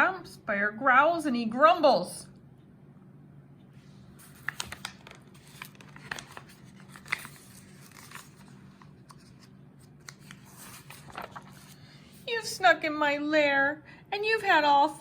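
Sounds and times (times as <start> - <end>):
book pages rustling: 3.8 - 12.3.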